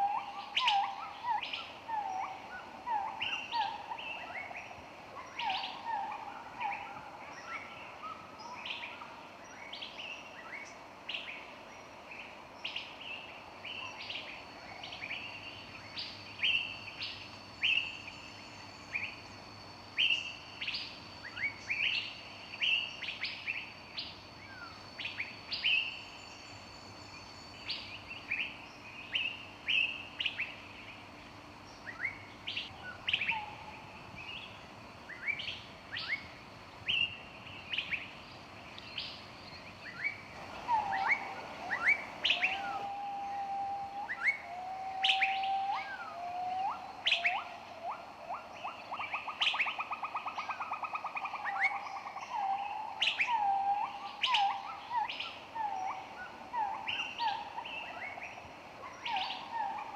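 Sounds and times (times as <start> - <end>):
birds chirping: 36.9 - 53.5
low whistled bird note: 40.5 - 46.2.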